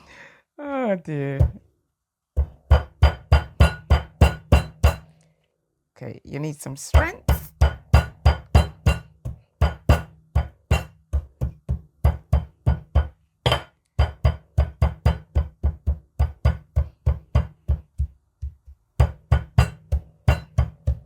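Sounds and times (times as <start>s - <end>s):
bottle pounding ginger: 2.4s - 5.1s, 7.0s - 21.0s.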